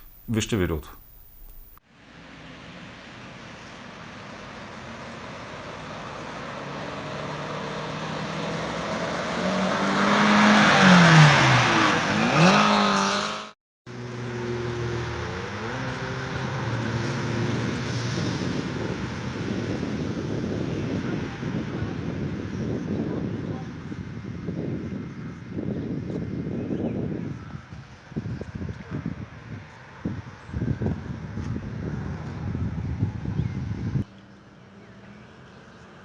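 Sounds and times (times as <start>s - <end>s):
vehicle engine running: 0.0s - 1.8s
road noise: 0.0s - 36.0s
car passing by: 2.0s - 20.1s.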